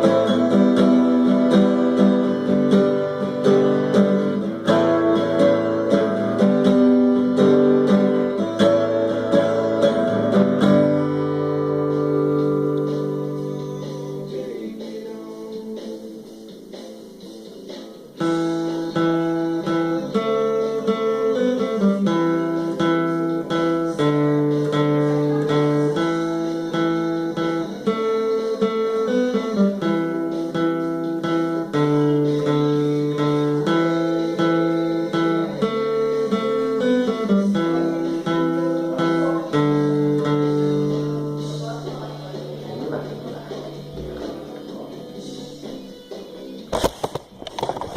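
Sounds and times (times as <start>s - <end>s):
guitar strumming chords: 0.0s - 47.9s.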